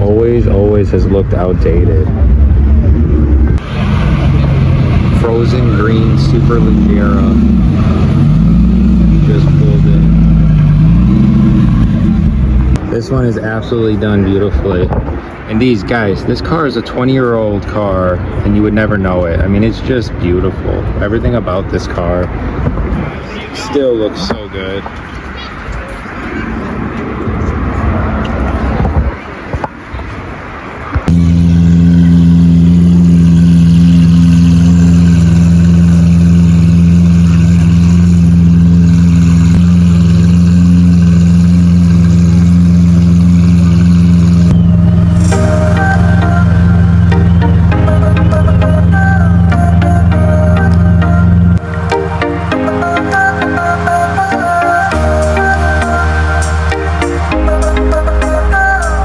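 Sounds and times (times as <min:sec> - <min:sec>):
car engine idling: 0:00.0 - 0:14.4, 0:31.1 - 0:59.0
electronic music with synth and beat: 0:45.2 - 0:59.0.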